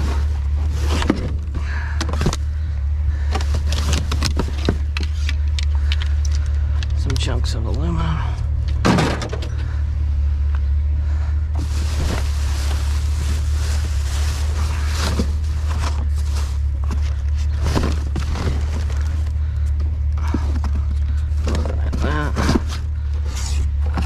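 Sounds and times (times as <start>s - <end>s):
knocks and rustling of items: 0.0s - 7.9s, 8.6s - 9.7s, 11.6s - 24.0s
truck engine idling: 0.0s - 24.0s.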